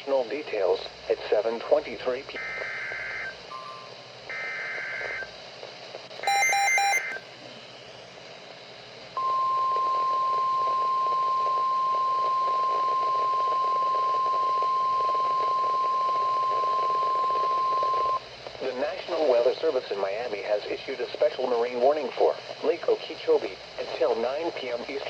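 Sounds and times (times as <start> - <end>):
steady alarm tone: 6.2 - 7.2.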